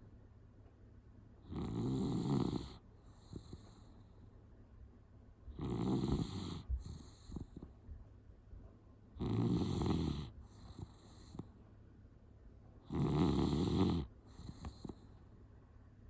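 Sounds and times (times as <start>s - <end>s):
dog snoring: 1.4s - 4.2s, 5.5s - 7.8s, 9.1s - 11.6s, 12.8s - 15.2s.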